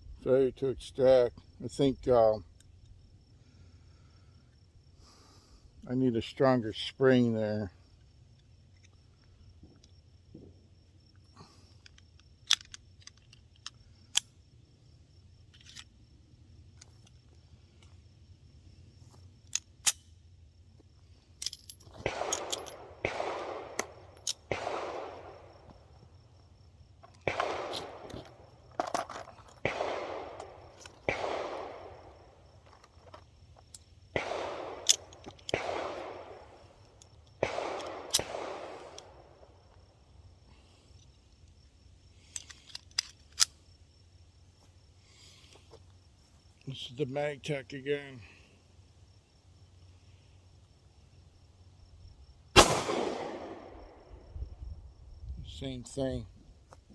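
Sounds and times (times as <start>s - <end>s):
sharp metallic clicks: 21.4s - 25.6s, 27.0s - 32.3s, 33.7s - 39.2s
echoing gunshots: 22.0s - 25.7s, 27.2s - 28.5s, 29.6s - 32.4s, 34.2s - 36.7s, 37.4s - 39.6s, 52.6s - 54.3s.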